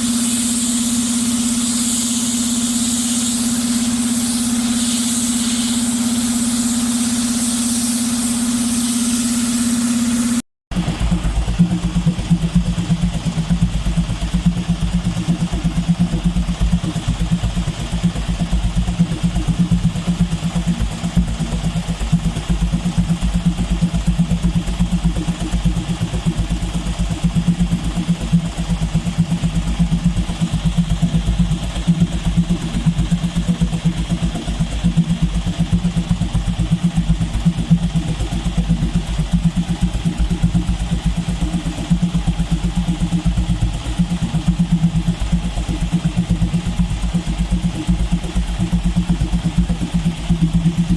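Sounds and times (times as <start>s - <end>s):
heavy diesel engine running: 8.0s - 50.9s.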